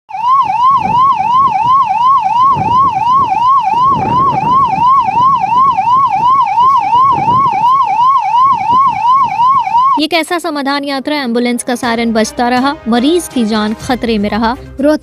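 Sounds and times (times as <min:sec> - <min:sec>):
ambulance siren yelping: 0:00.1 - 0:10.1.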